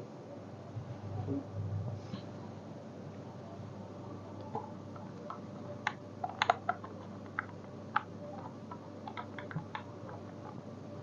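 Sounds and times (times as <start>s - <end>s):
parts clicking and tapping: 4.9s - 10.6s.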